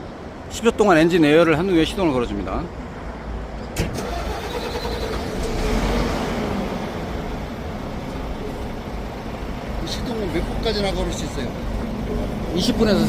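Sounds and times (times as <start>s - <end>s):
diesel engine starting and running: 3.6s - 13.0s.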